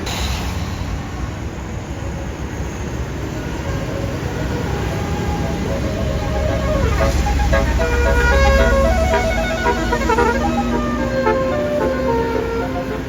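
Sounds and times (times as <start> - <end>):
bus engine rumble: 0.0 - 13.0
multi-tone bus horn: 3.5 - 13.0.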